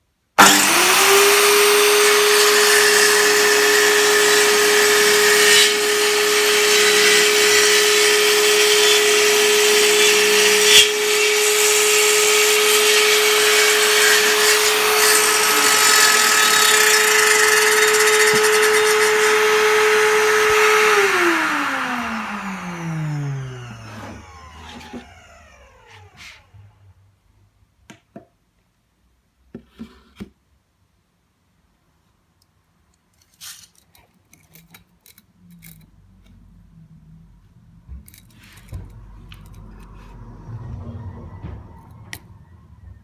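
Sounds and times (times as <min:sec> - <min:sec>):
circular saw whine: 0:00.4 - 0:26.7.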